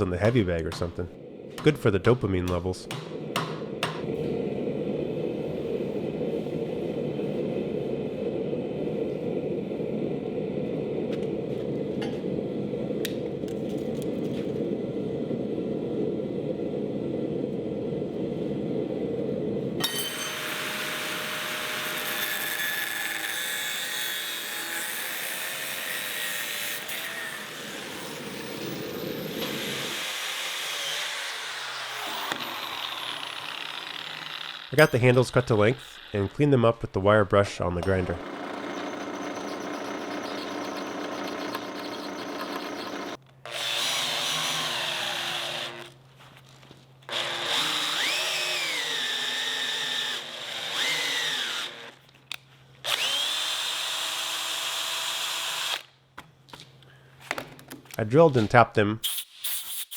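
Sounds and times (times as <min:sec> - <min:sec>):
power tool grinding steel: 0:19.8 - 0:36.7, 0:37.9 - 0:45.9, 0:47.1 - 0:51.9.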